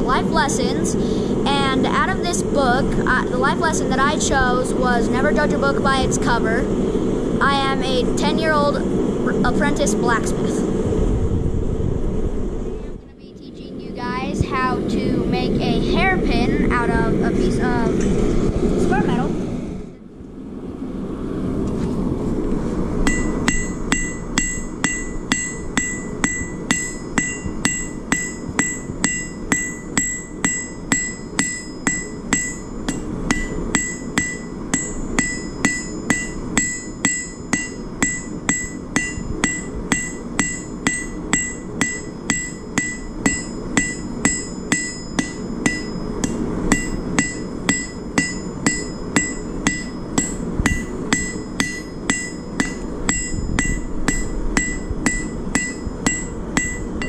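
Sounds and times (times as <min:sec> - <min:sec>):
low rushing noise: 0:00.0 - 0:57.0
hammer striking steel on anvil: 0:23.0 - 0:57.0.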